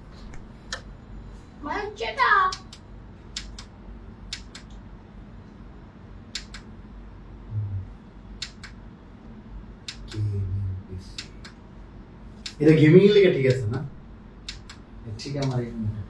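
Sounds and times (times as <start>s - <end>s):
sharp clicks in pairs: 3.4s - 3.7s, 4.3s - 4.8s, 6.4s - 6.7s, 8.4s - 8.8s, 14.5s - 14.8s
short low hums: 6.3s - 16.0s.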